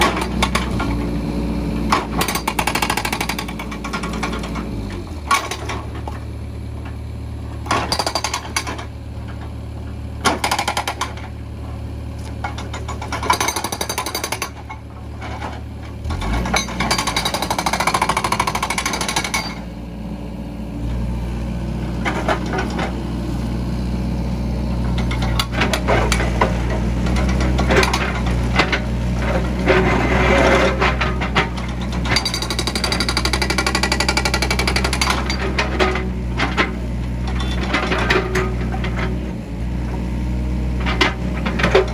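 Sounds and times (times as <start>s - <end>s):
backhoe diesel engine running: 0.0s - 41.9s.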